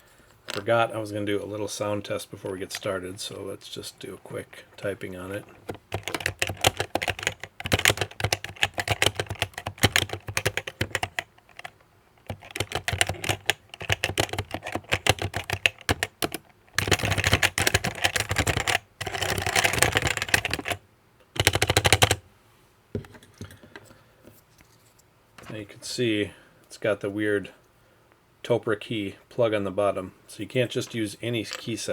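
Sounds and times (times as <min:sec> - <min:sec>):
keyboard typing: 0:04.8 - 0:20.8, 0:21.4 - 0:22.2.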